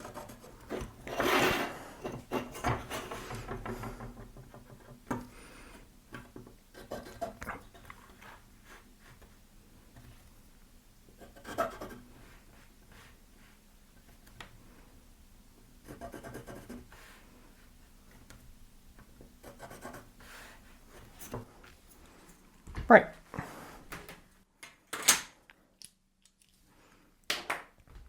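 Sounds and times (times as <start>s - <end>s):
rubbing and scraping on wood: 0.0s - 9.4s.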